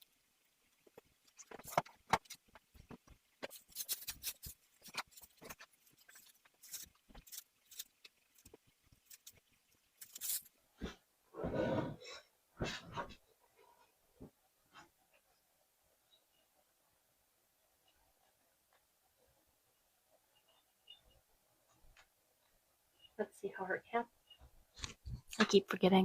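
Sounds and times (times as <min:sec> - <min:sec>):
small clicks taps and rustles: 0:00.0 - 0:10.5.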